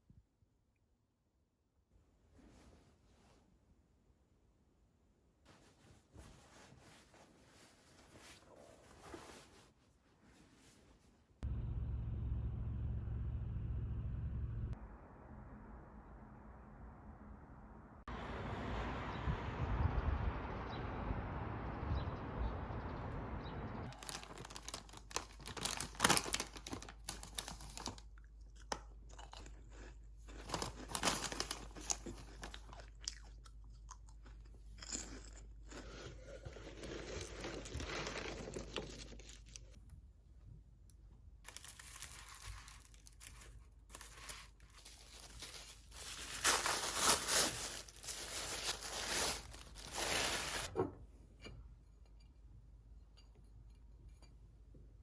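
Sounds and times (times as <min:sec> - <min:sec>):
low rushing noise: 0:11.5 - 0:23.8
packaging crinkling and tearing: 0:23.9 - 0:28.2, 0:30.4 - 0:32.7, 0:41.5 - 0:50.7.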